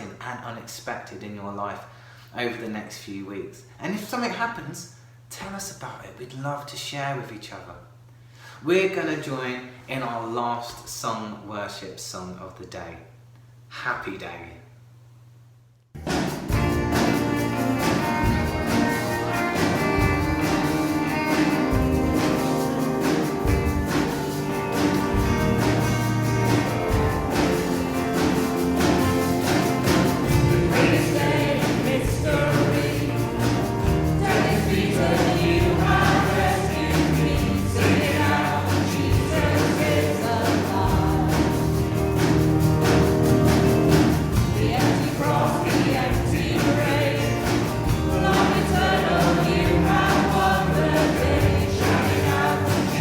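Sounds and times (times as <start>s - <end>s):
band accompaniment with steady beat: 16.0s - 53.0s
group singing worship song: 16.9s - 53.0s.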